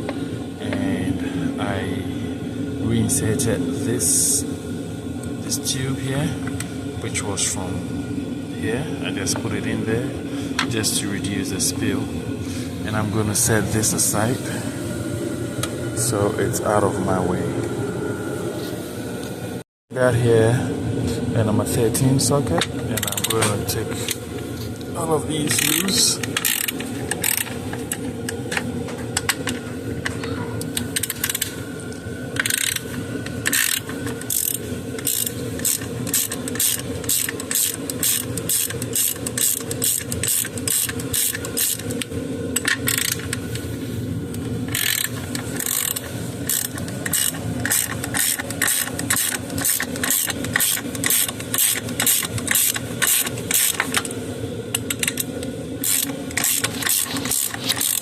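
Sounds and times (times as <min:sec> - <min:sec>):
steady low hum: 0:00.0 - 0:58.0
ratchet wrench clicking: 0:23.0 - 0:23.4, 0:25.5 - 0:27.5, 0:30.8 - 0:31.5, 0:32.4 - 0:32.8, 0:33.4 - 0:43.4, 0:44.7 - 0:54.1, 0:54.7 - 0:58.0.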